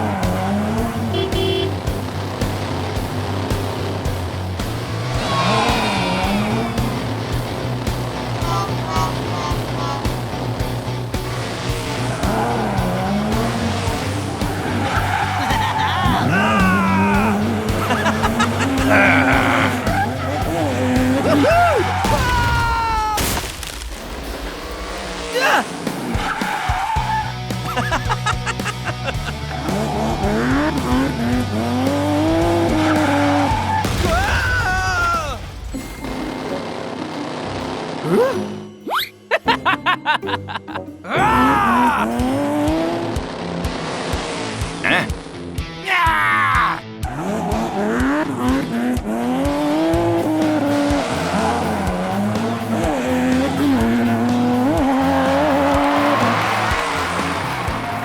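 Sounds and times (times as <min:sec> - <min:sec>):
vehicle engine humming: 0:00.0 - 0:22.8, 0:24.1 - 0:34.1, 0:35.4 - 0:38.8, 0:39.6 - 0:45.8, 0:46.8 - 0:58.0
music: 0:00.0 - 0:23.2, 0:24.2 - 0:58.0.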